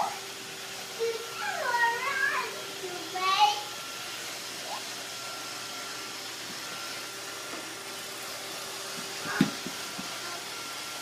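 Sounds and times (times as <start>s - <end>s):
robot vacuum whirring: 0.0s - 11.0s.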